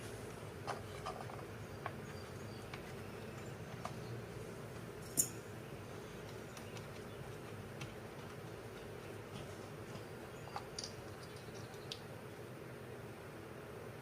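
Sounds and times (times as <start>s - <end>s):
small clicks and taps: 6.2s - 12.1s.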